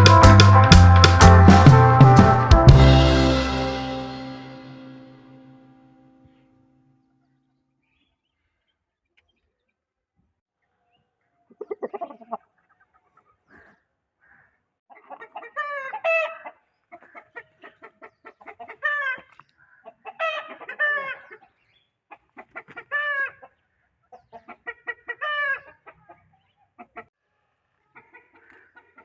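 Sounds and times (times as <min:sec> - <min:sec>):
chickens clucking: 0:11.5 - 0:13.4, 0:14.9 - 0:27.1, 0:27.8 - 0:29.0
loud short pitched chicken calls: 0:13.6 - 0:21.5, 0:22.1 - 0:23.6, 0:24.2 - 0:27.1.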